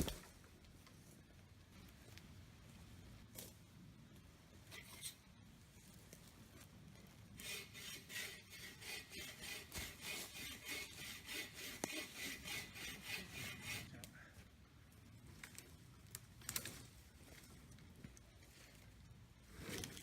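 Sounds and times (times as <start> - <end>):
hand saw cutting wood: 7.4 - 14.1.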